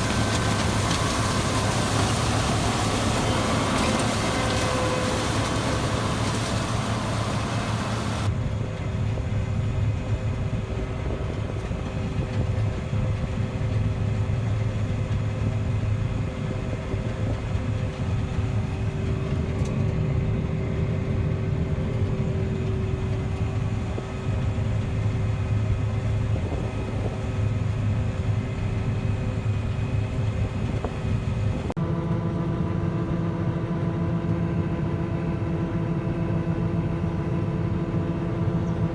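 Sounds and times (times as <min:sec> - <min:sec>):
farm machine engine running: 0:00.0 - 0:08.3
loud hiss: 0:00.0 - 0:08.3.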